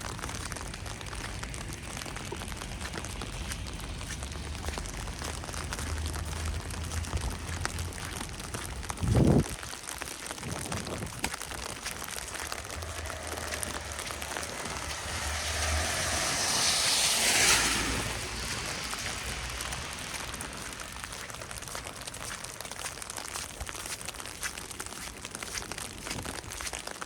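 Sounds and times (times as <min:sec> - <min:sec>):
vehicle engine hum: 0:00.0 - 0:09.0, 0:12.0 - 0:22.3
wet snow falling: 0:00.0 - 0:27.0
tyre hiss on wet road: 0:00.1 - 0:08.8, 0:11.7 - 0:25.6.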